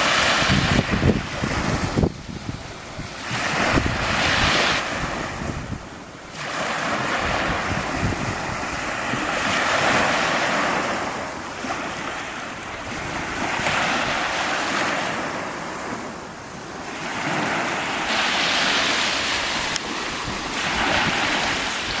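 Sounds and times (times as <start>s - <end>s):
wind buffeting microphone: 0.0s - 16.1s, 16.7s - 22.0s
waves breaking on shore: 0.0s - 22.0s.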